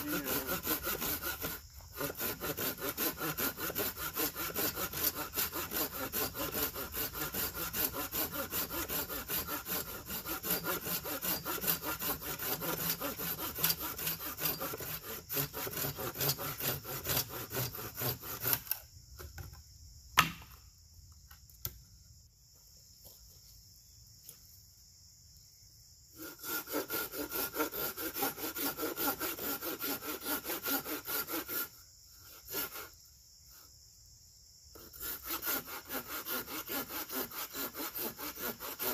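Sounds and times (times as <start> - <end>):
hand saw cutting wood: 0.0 - 18.8, 26.2 - 31.7, 32.3 - 32.9, 34.8 - 38.9
sharp knock: 20.2 - 20.5.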